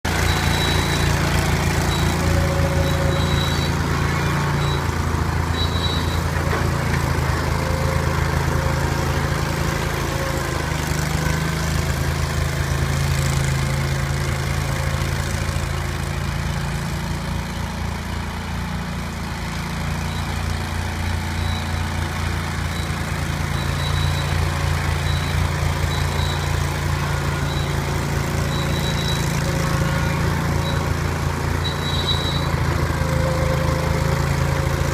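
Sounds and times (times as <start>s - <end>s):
loader engine running: 0.0s - 34.9s
short high squeaks: 0.1s - 10.5s, 19.9s - 34.9s.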